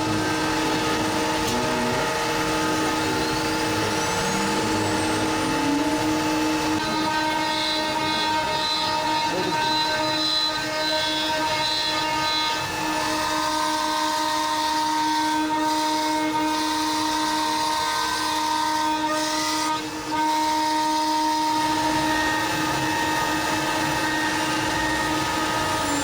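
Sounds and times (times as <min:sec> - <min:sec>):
dust extraction hissing: 0:00.0 - 0:11.0, 0:20.4 - 0:26.0
router spindle whining: 0:00.0 - 0:26.0.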